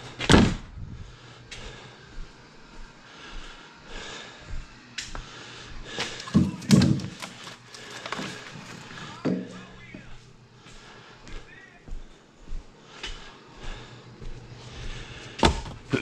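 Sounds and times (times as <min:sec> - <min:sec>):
firewood logs knocking together: 0:06.0 - 0:09.5.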